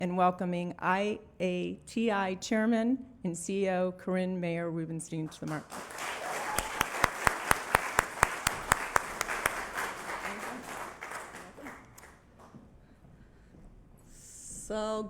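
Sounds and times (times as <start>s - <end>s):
audience applauding: 5.5s - 12.2s
sharp nearby clap: 5.5s - 12.5s.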